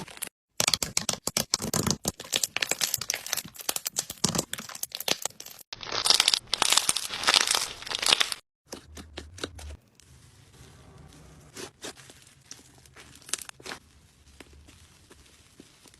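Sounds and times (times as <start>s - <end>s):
scattered clicks and pops: 0.0s - 6.5s
dense crackling and crinkling: 1.6s - 8.4s, 9.3s - 15.9s.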